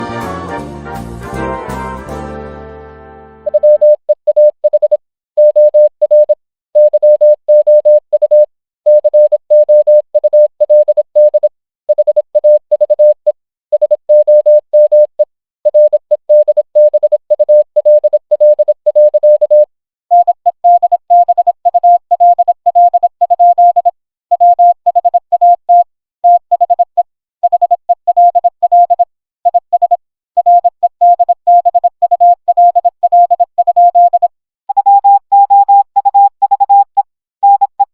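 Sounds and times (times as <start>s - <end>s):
morse code beeps: 3.4s - 37.9s.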